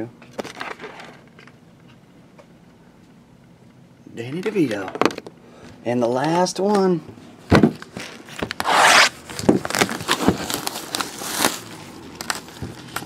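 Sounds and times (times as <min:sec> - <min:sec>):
plastic packaging crinkling: 0:08.0 - 0:13.0.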